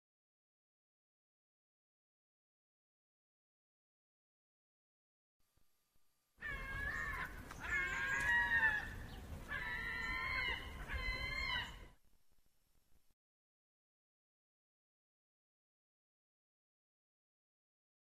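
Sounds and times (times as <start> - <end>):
wavering animal calls: 6.4 - 12.0.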